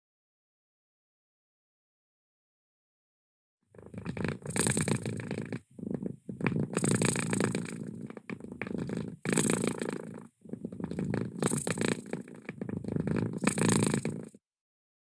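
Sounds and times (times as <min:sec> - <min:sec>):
cat purring: 0:03.7 - 0:14.4.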